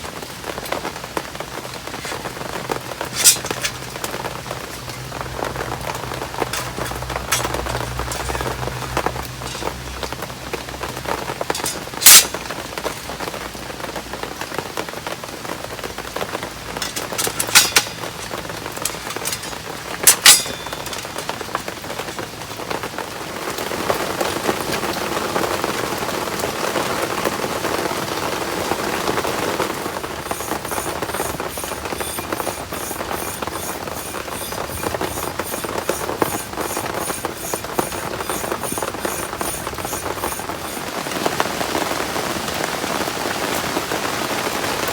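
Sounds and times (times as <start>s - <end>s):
even high ticking: 29.9s - 41.1s.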